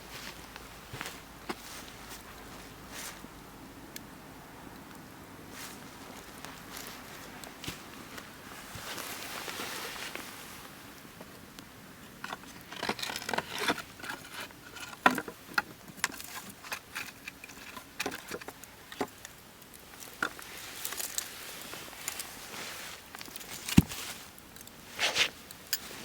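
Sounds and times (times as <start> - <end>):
wood fire crackling and popping: 10.2 - 26.0.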